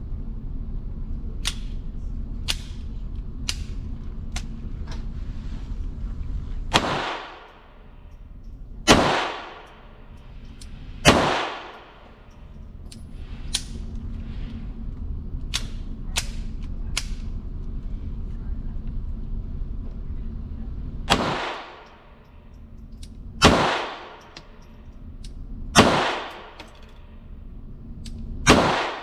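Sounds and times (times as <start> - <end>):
pistol shots: 6.7 - 7.6, 8.9 - 10.0, 11.0 - 12.2, 21.1 - 22.0, 23.4 - 24.4, 25.8 - 26.6, 28.5 - 29.0.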